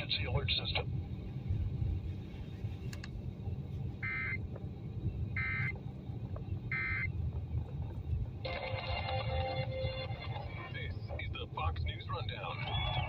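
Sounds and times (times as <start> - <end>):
radio music: 0.0 - 1.0, 6.5 - 13.0
steady low rumble: 0.0 - 13.0
alert data bursts: 5.4 - 5.7, 6.7 - 7.1.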